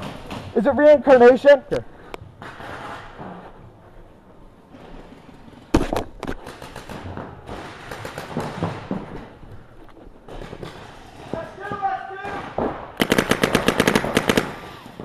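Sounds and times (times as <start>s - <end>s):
low field noise: 0.0s - 15.0s
paintball markers firing: 12.6s - 15.0s.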